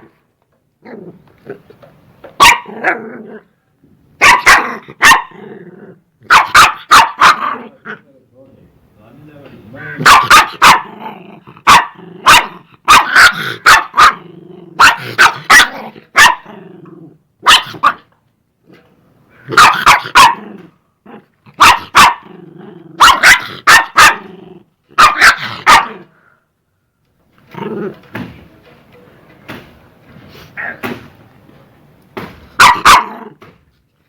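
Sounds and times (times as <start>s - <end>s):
dog barking: 2.4s - 2.8s, 4.2s - 5.4s, 6.3s - 7.6s, 10.0s - 10.9s, 11.6s - 14.2s, 14.8s - 16.5s, 17.4s - 18.1s, 19.5s - 20.4s, 21.6s - 22.3s, 23.0s - 24.3s, 25.0s - 26.1s, 30.6s - 30.8s, 32.6s - 33.2s
dog growling: 2.7s - 3.5s, 4.6s - 6.0s, 10.8s - 12.7s, 13.3s - 17.2s, 22.2s - 24.7s.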